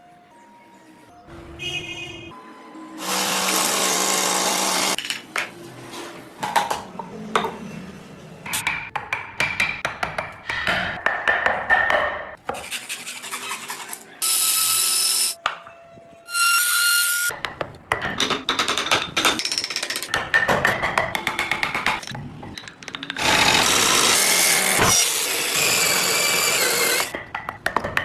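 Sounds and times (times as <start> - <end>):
power tool running: 3.0 - 5.0, 23.2 - 27.1
scraping and cutting wood: 3.0 - 5.0, 23.2 - 27.1.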